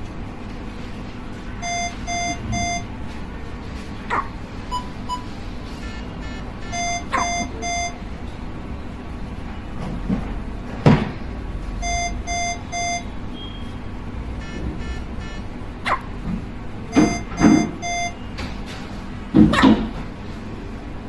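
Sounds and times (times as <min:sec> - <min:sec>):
electronic monitor beeping: 0:01.6 - 0:03.0, 0:04.1 - 0:08.2, 0:11.8 - 0:15.5, 0:16.9 - 0:18.4.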